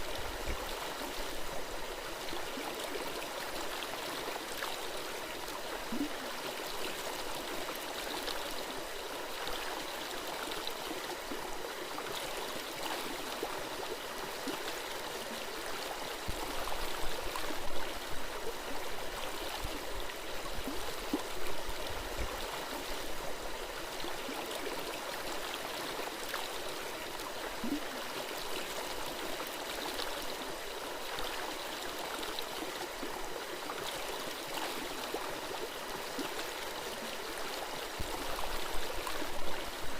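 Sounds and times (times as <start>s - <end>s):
stream babbling over stones: 0.0s - 39.9s.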